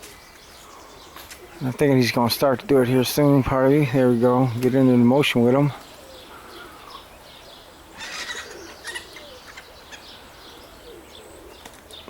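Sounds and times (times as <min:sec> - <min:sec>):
pigeons cooing: 0:00.0 - 0:12.0.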